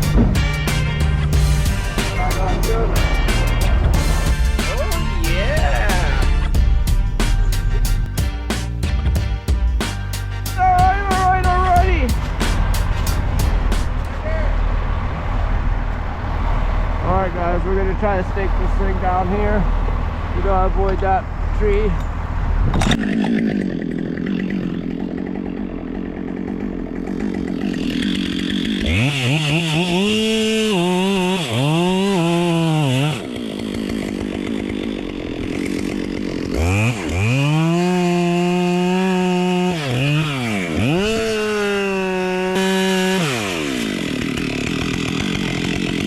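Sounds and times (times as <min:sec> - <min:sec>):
chainsaw revving and cutting: 0:00.0 - 0:10.4, 0:22.8 - 0:46.0.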